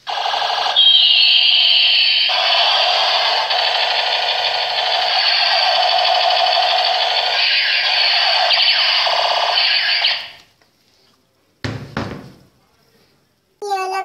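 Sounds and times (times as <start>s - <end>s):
buzzy electronic toy gun alarm tone: 0.1s - 10.4s.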